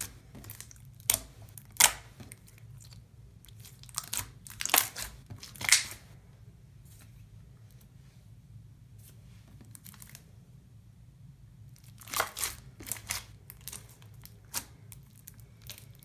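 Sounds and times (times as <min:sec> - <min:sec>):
slime squished by hand: 0:00.0 - 0:06.1, 0:11.7 - 0:16.0
low steady hum: 0:00.0 - 0:16.0
wet crackles and pops: 0:03.6 - 0:06.0.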